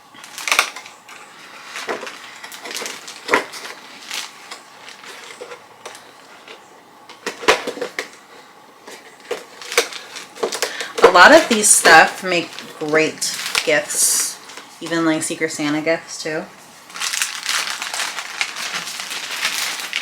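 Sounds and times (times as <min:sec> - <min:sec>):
packaging rustling and crinkling: 0:00.2 - 0:15.0, 0:16.7 - 0:20.0
items knocking as set down: 0:07.1 - 0:08.2, 0:08.8 - 0:15.0.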